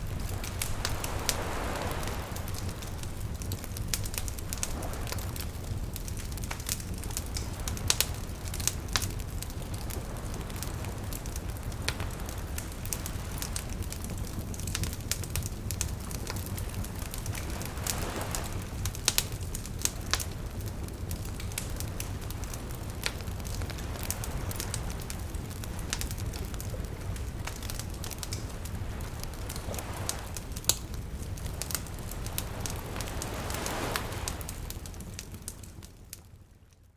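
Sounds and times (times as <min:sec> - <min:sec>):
gentle lapping water: 0:00.0 - 0:14.0, 0:21.7 - 0:35.8
campfire crackling and popping: 0:00.0 - 0:36.9.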